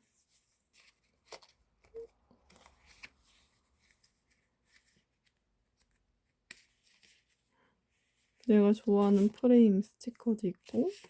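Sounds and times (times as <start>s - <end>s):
paper rustling and tapping: 0.7s - 7.4s.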